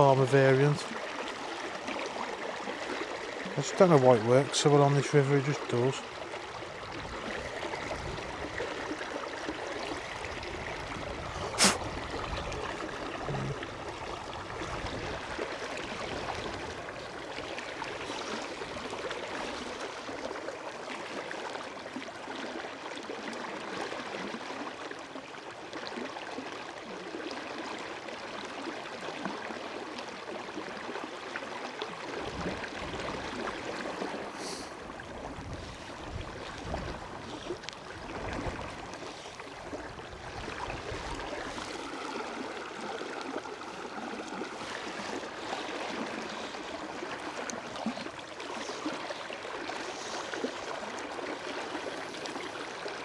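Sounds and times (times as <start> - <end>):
river water running over rocks: 0.0 - 53.0.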